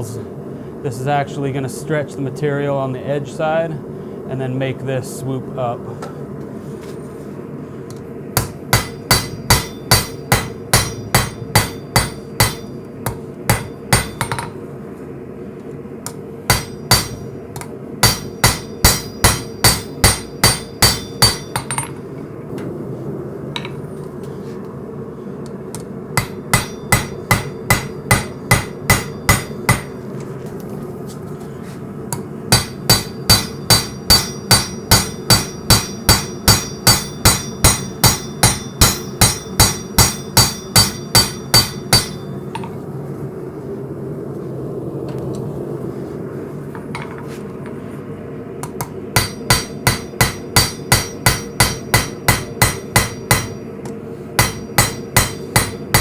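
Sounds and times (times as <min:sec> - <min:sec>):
steady hum: 0:00.0 - 0:56.0
hammer striking steel on anvil: 0:08.4 - 0:14.6, 0:16.1 - 0:22.0, 0:26.2 - 0:30.0, 0:32.1 - 0:42.7, 0:48.6 - 0:53.7, 0:54.4 - 0:56.0.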